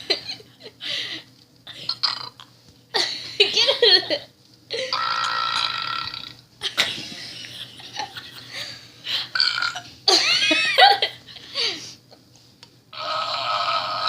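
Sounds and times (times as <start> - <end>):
person burping: 1.8 - 2.4, 4.9 - 6.4, 9.3 - 9.9.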